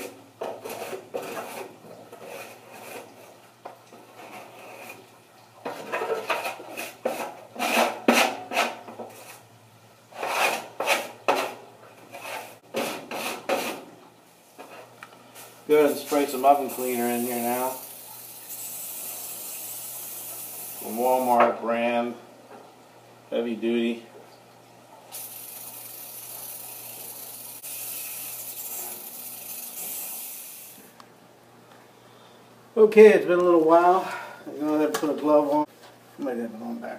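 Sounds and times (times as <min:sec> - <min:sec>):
aerosol can spraying hiss: 0:27.6 - 0:30.8.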